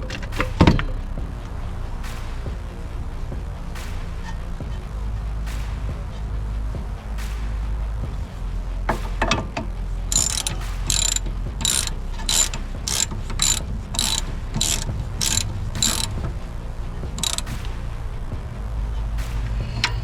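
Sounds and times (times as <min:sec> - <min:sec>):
ratchet wrench clicking: 0:10.1 - 0:16.3, 0:17.2 - 0:17.6.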